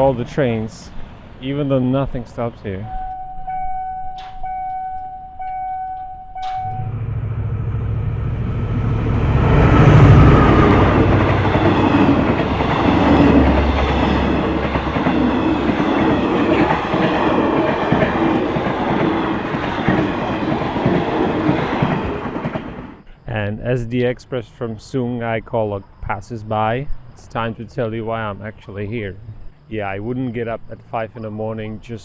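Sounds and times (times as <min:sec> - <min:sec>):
diesel locomotive engine rumble: 0:00.0 - 0:04.5, 0:05.4 - 0:24.2
steady high tone: 0:01.4 - 0:22.0
train wheels clattering over rail joints: 0:10.7 - 0:22.9.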